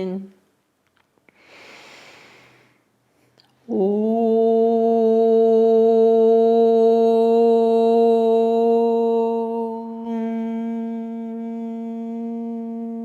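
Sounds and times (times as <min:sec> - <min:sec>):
breath in: 0:01.3 - 0:02.8
person chanting one long tone: 0:03.6 - 0:13.0.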